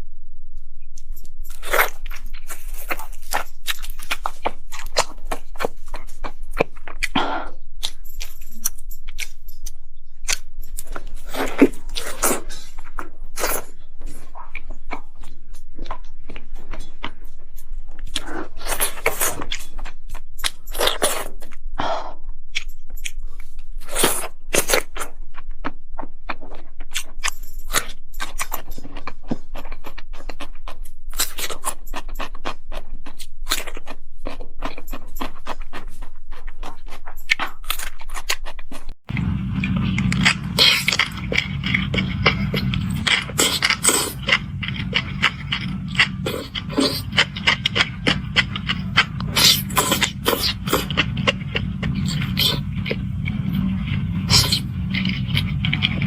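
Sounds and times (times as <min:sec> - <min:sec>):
crunching and chewing: 0:01.5 - 0:09.4, 0:10.2 - 0:21.5, 0:22.5 - 0:56.0
crackly bites: 0:31.1 - 0:56.0.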